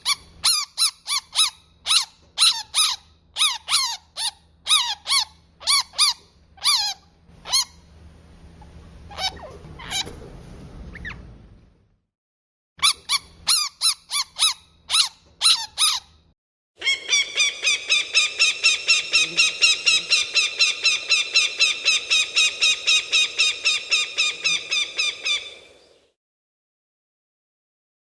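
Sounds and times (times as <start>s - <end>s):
animal rapid chattering calls: 16.8s - 25.5s.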